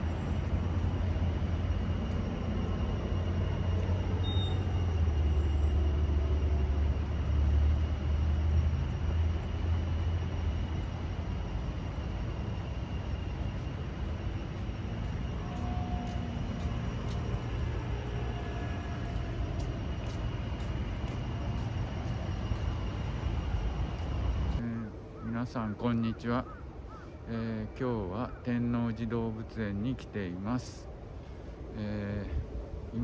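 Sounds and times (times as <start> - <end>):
passing vehicle rumble: 13.1 - 24.6.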